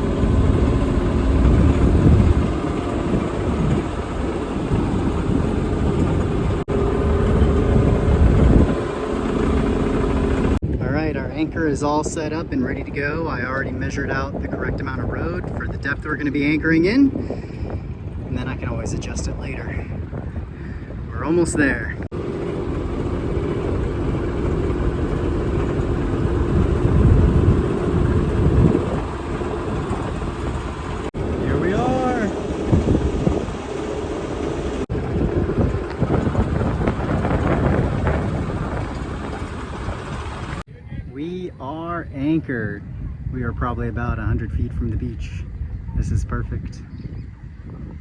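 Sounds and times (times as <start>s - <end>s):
boat motor running: 0.0s - 10.7s, 21.9s - 40.7s
heavy low rumble: 0.0s - 41.2s
wind on microphone: 0.0s - 48.0s.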